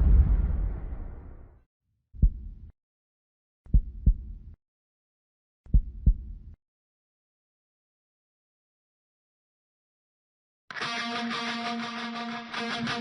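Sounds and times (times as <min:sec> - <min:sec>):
low heartbeat-like thumps: 0:00.0 - 0:01.4, 0:02.2 - 0:02.7, 0:03.7 - 0:04.6, 0:05.7 - 0:06.6
booming hit: 0:00.0 - 0:01.5.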